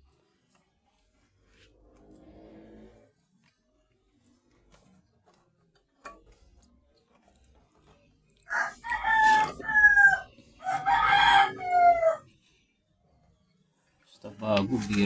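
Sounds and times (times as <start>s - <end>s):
rooster crowing: 8.5s - 12.3s.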